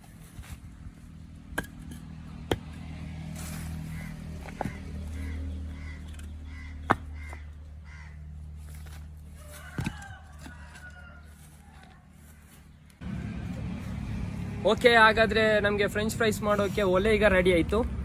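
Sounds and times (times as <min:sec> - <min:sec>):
birds calling: 0:03.4 - 0:14.1.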